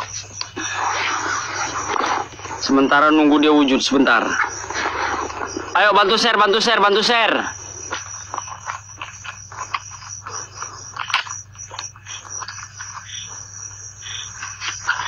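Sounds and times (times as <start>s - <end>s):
crickets trilling: 0.0s - 15.0s
sharp clicks and crackles: 7.9s - 13.2s.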